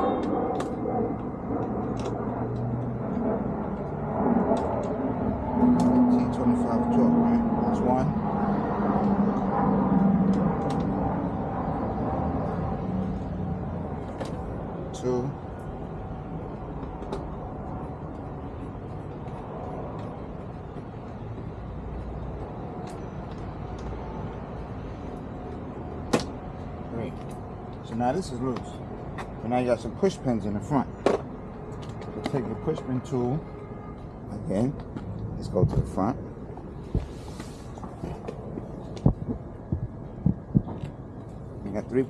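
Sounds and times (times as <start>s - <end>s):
low background rumble: 33.6s - 42.0s.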